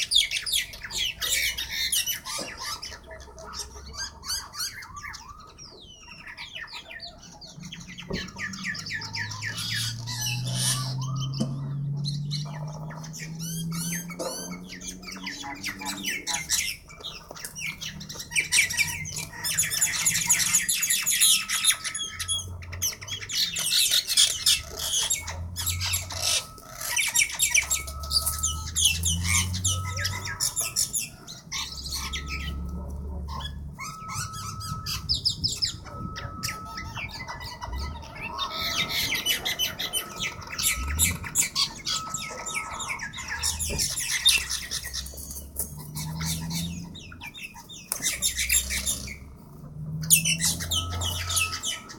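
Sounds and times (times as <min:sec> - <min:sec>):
birds squawking harshly: 0:00.0 - 0:51.9
short beeps: 0:32.1 - 0:43.9.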